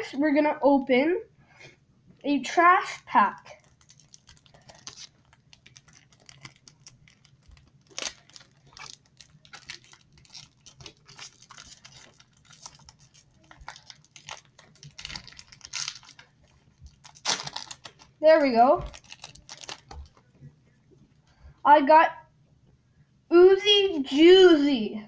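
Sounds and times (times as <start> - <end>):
plastic packaging tearing: 3.4 - 20.2
plastic packaging crinkling: 3.4 - 20.3.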